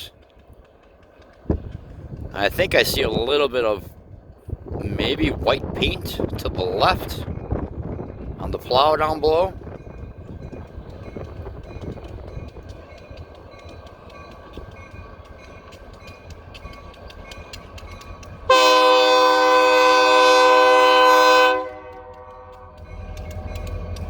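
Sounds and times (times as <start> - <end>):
train wheels clicking over rail joints: 0.0 - 24.0
locomotive air horn blast: 18.5 - 22.8.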